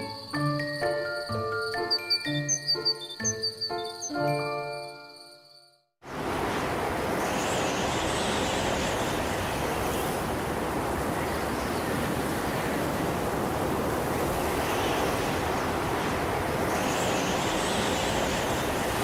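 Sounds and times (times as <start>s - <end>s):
rushing wind: 6.0s - 19.0s.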